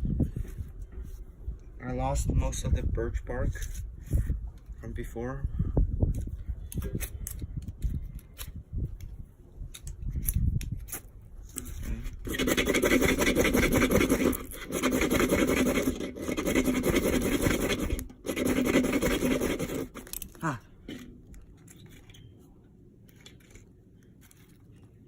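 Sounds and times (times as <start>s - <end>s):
wind rumble on microphone: 0.0s - 15.8s
rasping rubbing strokes: 11.6s - 20.6s.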